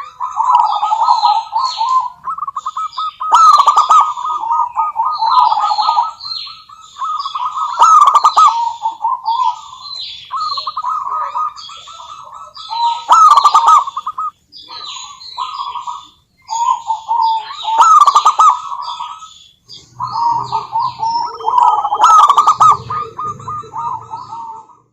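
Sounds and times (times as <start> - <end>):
dove cooing: 0.0 - 24.9
high bird chirps: 0.0 - 24.9.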